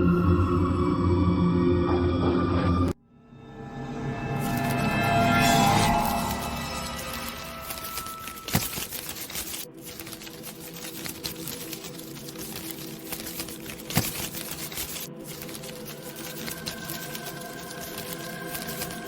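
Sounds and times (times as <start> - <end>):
faint sustained drone: 0.0 - 7.7
rapid clicking and crackling: 5.4 - 19.0.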